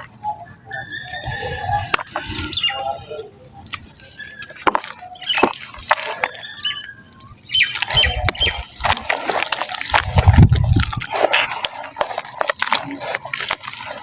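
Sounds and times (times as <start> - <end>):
wet mud crumbling into water: 4.4 - 6.6, 7.6 - 14.0.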